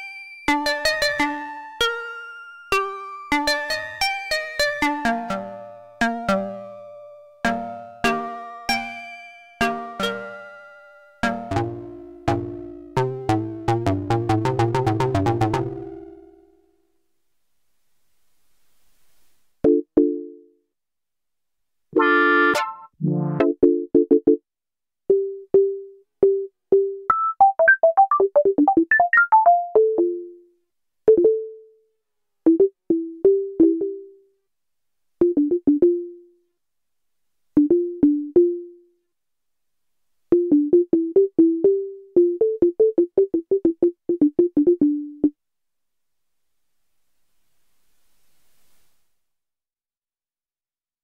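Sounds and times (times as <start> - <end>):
synth playing sequenced pattern: 22.0 - 24.4, 40.3 - 45.3.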